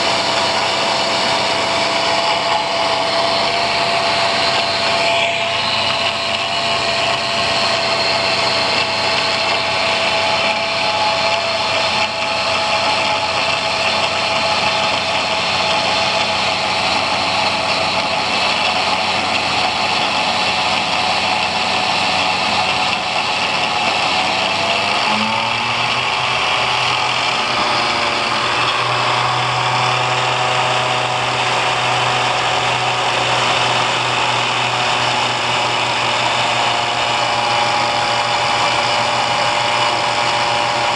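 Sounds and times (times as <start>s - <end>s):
angle grinder whine: 0.0s - 40.9s
low hum: 0.0s - 40.9s.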